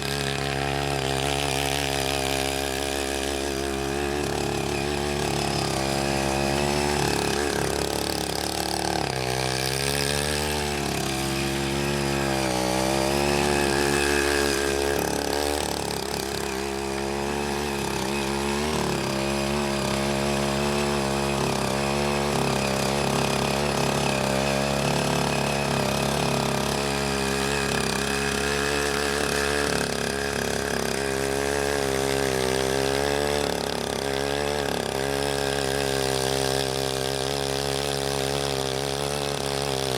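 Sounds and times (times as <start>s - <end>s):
tiller engine running under load: 0.0s - 39.9s.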